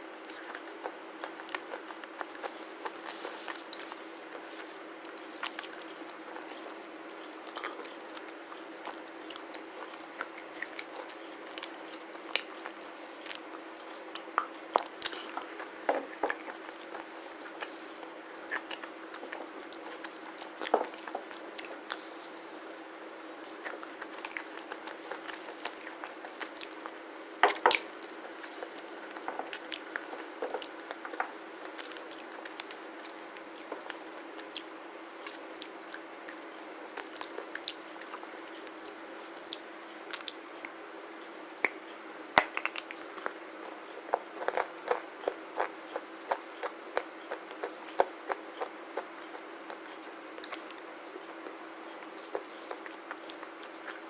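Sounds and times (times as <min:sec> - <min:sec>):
person chewing crunchy slate: 0:23.4 - 0:36.4, 0:42.4 - 0:54.0.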